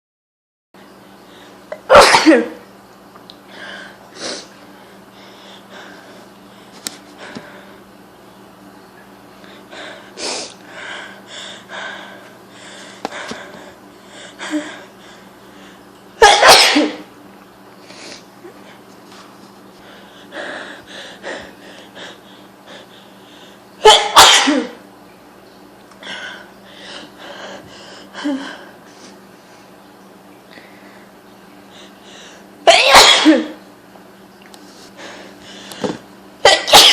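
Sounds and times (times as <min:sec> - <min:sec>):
woman sneezing: 0:01.8 - 0:02.6, 0:16.2 - 0:17.1, 0:23.8 - 0:24.8, 0:32.7 - 0:33.6, 0:36.4 - 0:36.9.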